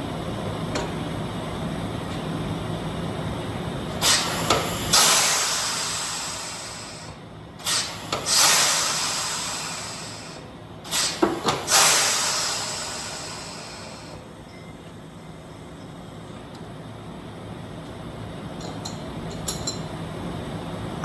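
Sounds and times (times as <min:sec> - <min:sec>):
loud hissing bursts: 0:04.0 - 0:14.2.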